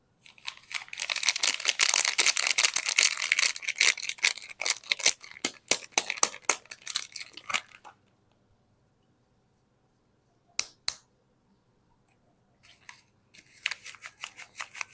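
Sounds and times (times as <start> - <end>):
wrapper crinkling: 0.2 - 7.9, 12.7 - 14.9.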